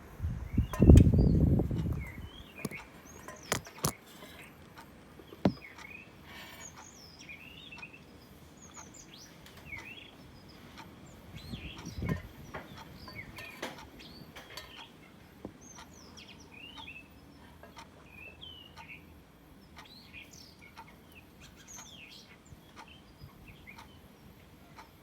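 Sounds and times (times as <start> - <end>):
songbird singing: 0.2 - 25.0
sharp clicks: 1.8 - 6.0.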